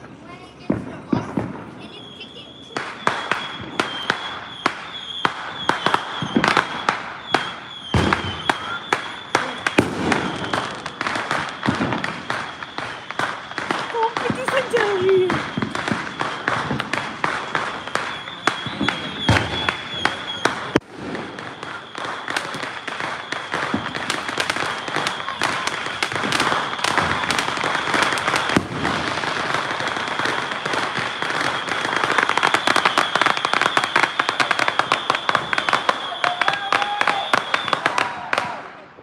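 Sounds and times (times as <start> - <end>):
fireworks cracking and popping: 0.0 - 39.0
thin high whistle: 2.0 - 10.8, 17.7 - 20.8, 30.3 - 38.0
sharp firework bang: 7.9 - 12.4, 18.5 - 30.8.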